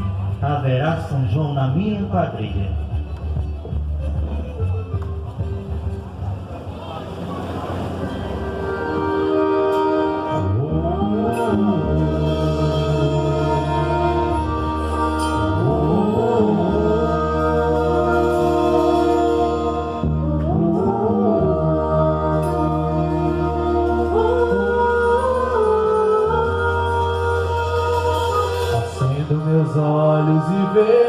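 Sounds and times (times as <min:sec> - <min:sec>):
held chords over low bass: 0:00.0 - 0:31.0
person singing wordless phrases: 0:10.2 - 0:31.0.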